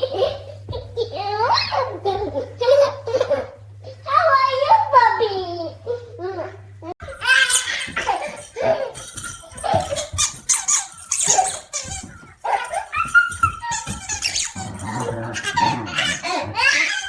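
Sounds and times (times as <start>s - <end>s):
puppy squeaking and whining: 7.3s - 17.0s.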